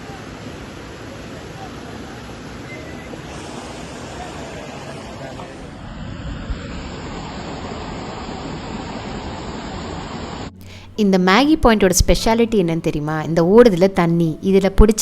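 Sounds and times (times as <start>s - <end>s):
river water rushing: 0.0s - 10.6s.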